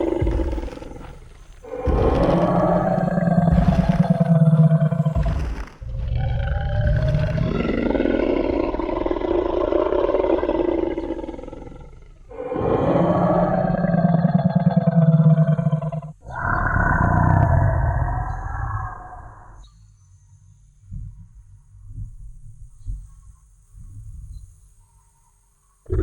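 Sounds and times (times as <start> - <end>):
low thuds: 0.0 - 9.7
dinosaur roar: 0.0 - 19.6.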